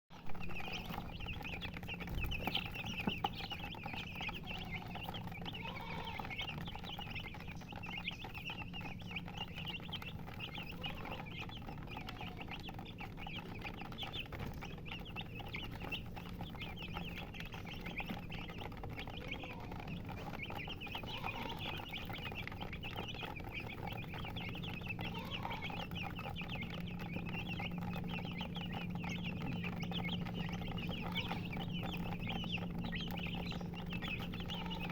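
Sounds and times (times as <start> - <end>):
chicks peeping: 0.1 - 34.9
hen clucking: 0.2 - 34.9
steady low hum: 12.8 - 34.9.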